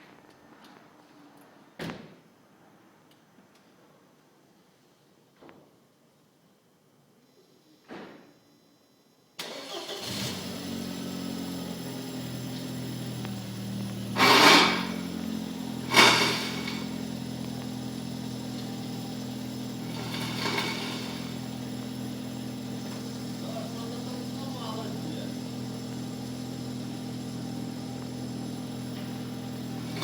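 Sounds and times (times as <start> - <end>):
car engine starting and idling: 9.4 - 30.0
loud short noise bursts: 14.2 - 15.2, 15.9 - 17.0, 19.9 - 21.4.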